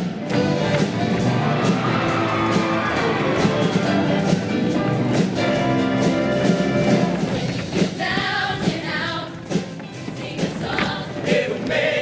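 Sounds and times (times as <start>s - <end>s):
band playing instrumental: 0.0s - 10.5s.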